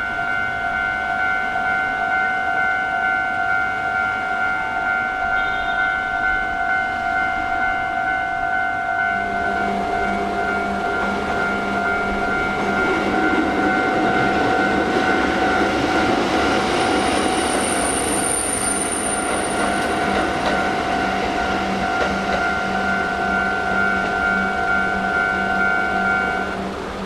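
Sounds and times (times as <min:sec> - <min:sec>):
train wheels running on rails: 0:00.0 - 0:27.0
high wheel squeal: 0:16.8 - 0:20.2.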